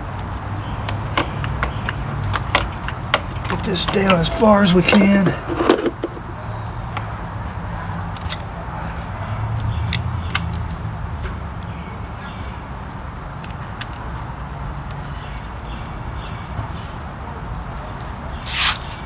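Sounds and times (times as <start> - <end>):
metallic clicks of hand tools: 7.9 - 8.5.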